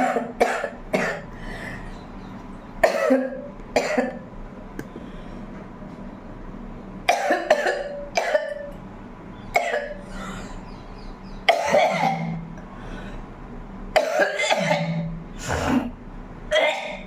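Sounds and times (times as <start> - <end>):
woman coughing: 0.0 - 1.2, 2.8 - 4.2, 7.1 - 8.6, 9.6 - 10.0, 11.5 - 12.4, 14.0 - 17.0.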